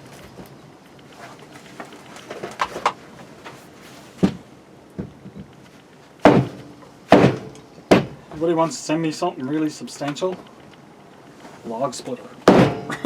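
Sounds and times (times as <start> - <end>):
firewood knocking and clattering: 4.2 - 8.5, 12.4 - 13.0.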